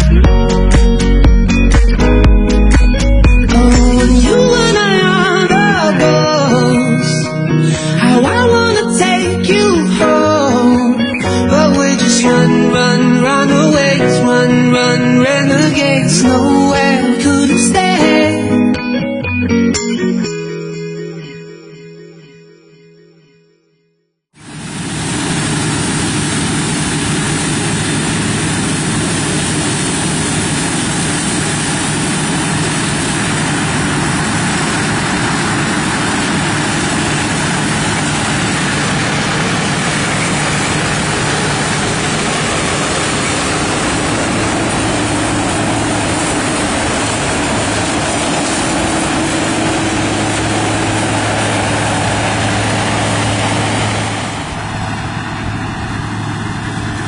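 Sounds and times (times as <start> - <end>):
combine harvester engine hum: 0.0 - 18.6, 24.4 - 57.0
dense mechanical rush: 24.4 - 57.0.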